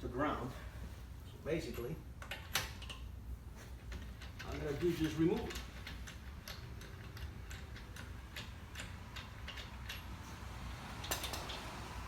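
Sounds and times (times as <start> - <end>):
lug wrench metallic clicks: 1.7 - 3.1, 3.8 - 12.0.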